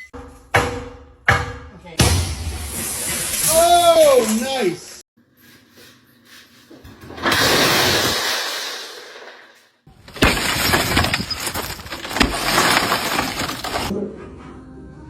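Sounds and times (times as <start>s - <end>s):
glass shattering: 2.0s - 4.5s, 7.2s - 13.9s.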